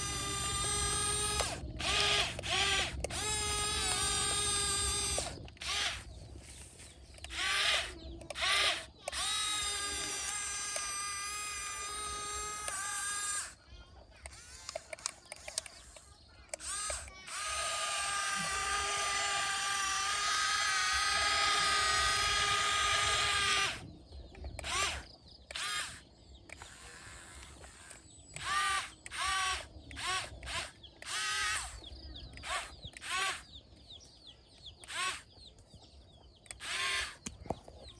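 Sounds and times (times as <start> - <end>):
electric motor whine: 0.0 - 13.6, 14.2 - 33.5, 34.8 - 35.3, 36.5 - 37.6.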